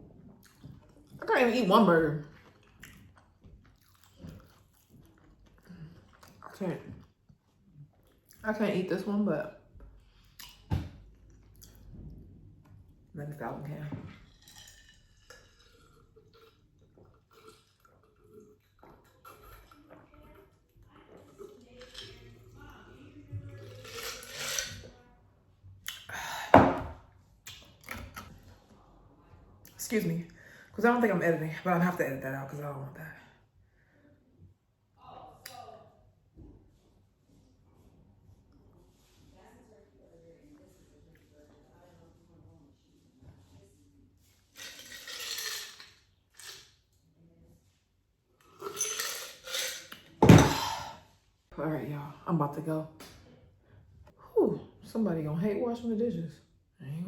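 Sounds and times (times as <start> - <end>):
dishes and cutlery clattering: 14.2 - 18.2, 23.4 - 25.0, 44.5 - 46.7, 48.4 - 50.8.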